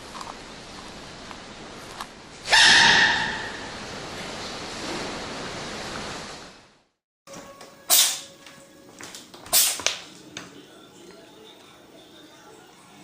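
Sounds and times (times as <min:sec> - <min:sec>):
animal sneezing: 0:07.9 - 0:08.3, 0:09.5 - 0:09.9.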